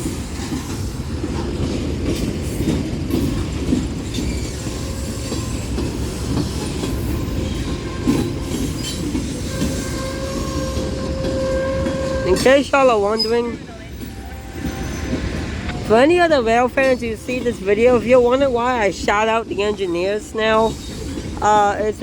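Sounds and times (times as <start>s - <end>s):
train wheels rumbling on rail: 0.0s - 22.0s
wheels clicking over rail joints: 0.0s - 22.0s.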